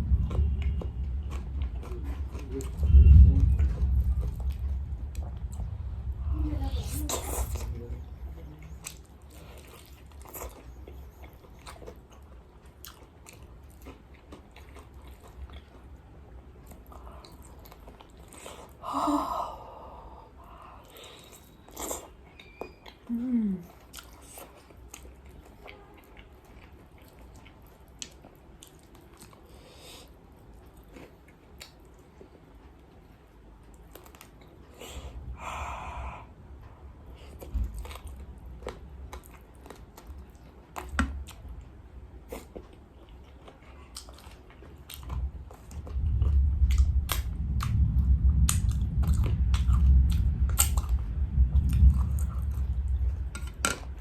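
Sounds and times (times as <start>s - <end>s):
crunchy chewing: 8.6s - 16.0s.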